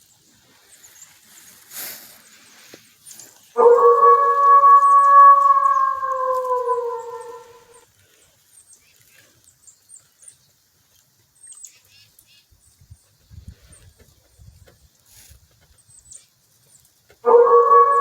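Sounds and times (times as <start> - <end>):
high thin bird chirps: 3.0 - 7.8.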